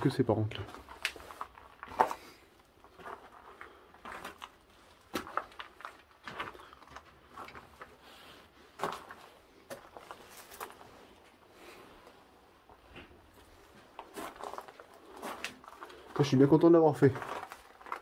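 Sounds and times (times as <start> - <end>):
footsteps with light scuffs: 0.4 - 11.4, 12.7 - 18.0.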